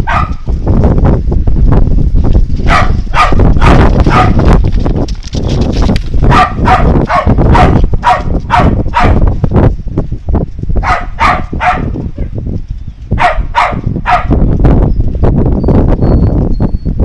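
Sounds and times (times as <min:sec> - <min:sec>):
dog barking: 0:00.0 - 0:00.4, 0:02.7 - 0:04.4, 0:06.3 - 0:09.2, 0:10.8 - 0:11.9, 0:13.2 - 0:14.4.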